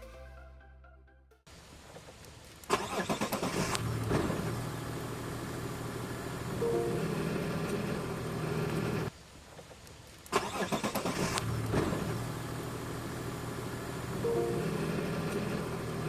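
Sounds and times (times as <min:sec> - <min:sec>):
car engine running: 0:03.6 - 0:09.1, 0:11.4 - 0:16.0.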